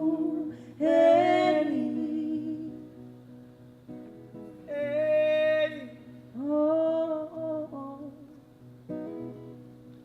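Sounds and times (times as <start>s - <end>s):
soft acoustic guitar: 0.0s - 10.0s
person singing long notes: 4.7s - 8.3s.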